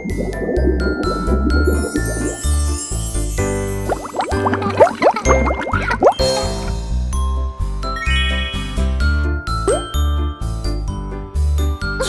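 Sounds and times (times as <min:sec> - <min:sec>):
cartoon background music: 0:00.0 - 0:10.9
upward-swooping cartoon sound effects: 0:08.0 - 0:09.2.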